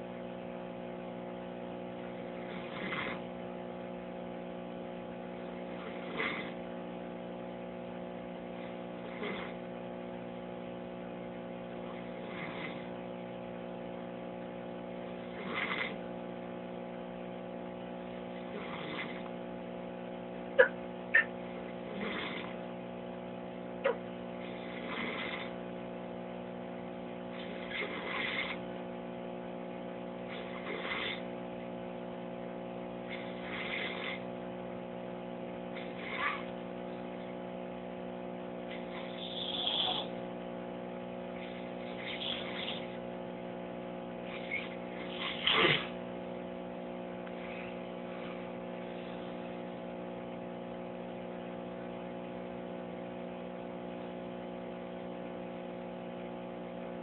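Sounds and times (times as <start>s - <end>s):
steady electrical hum: 0.0s - 57.0s
man snoring: 2.1s - 3.4s, 5.5s - 6.7s, 8.5s - 9.7s, 11.9s - 13.0s, 15.1s - 16.1s, 18.4s - 19.3s, 21.8s - 22.6s, 24.4s - 25.6s, 27.4s - 28.6s, 30.2s - 31.3s, 33.0s - 34.3s, 38.8s - 40.2s, 41.3s - 43.0s, 44.2s - 46.0s.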